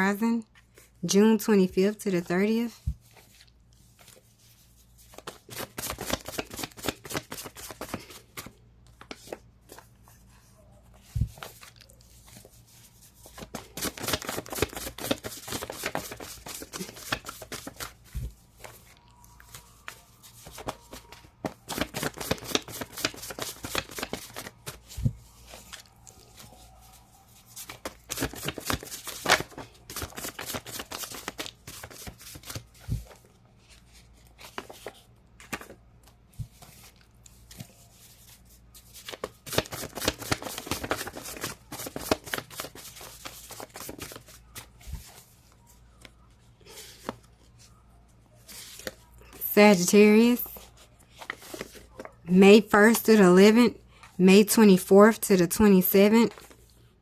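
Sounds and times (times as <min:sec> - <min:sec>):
cards being shuffled: 0:05.1 - 0:09.9, 0:13.2 - 0:18.9, 0:19.5 - 0:45.3, 0:50.5 - 0:52.2.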